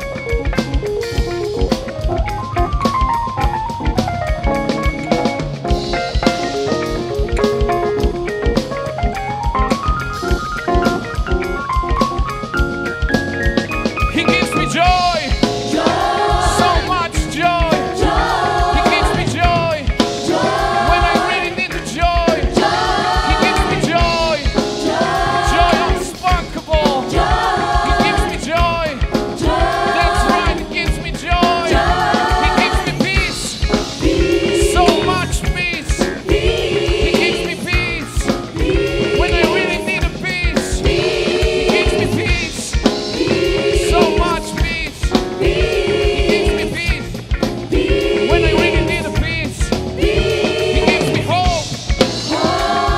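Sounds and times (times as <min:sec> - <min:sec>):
band playing a steady beat: 0:00.0 - 0:52.9
gospel choir singing: 0:13.8 - 0:52.9.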